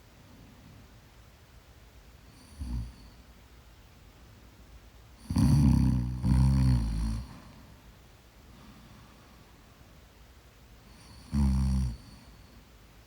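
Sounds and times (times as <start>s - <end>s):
woman snoring: 5.3s - 7.3s, 11.1s - 12.2s.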